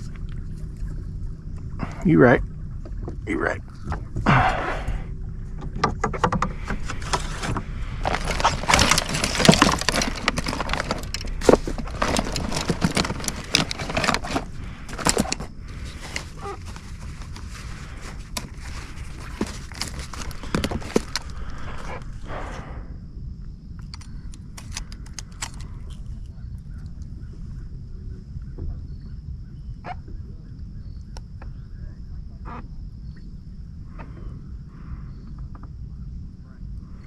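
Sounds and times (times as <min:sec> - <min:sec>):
knocks and rattles of handling: 0:05.6 - 0:22.0.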